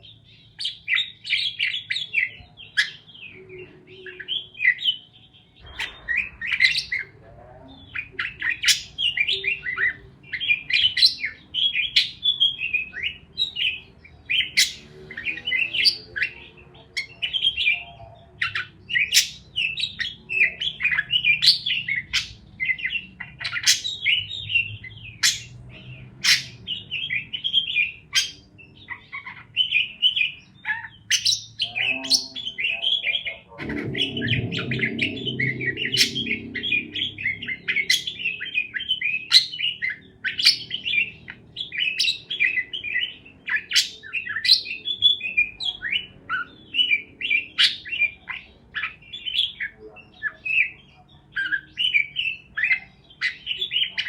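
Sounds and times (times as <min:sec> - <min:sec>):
parakeets chirping: 0:00.0 - 0:54.0
low rumbling noise: 0:05.5 - 0:11.6, 0:31.6 - 0:38.8.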